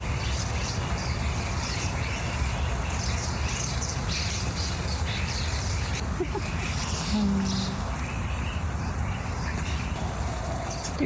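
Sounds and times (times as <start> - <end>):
flock of small birds chirping: 0.0 - 11.0
steady low rumble: 0.0 - 11.0.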